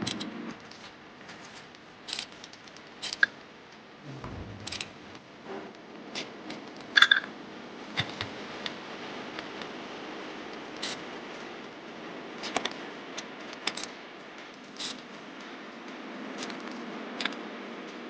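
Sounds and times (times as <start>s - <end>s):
dull low thump: 4.0s - 5.5s.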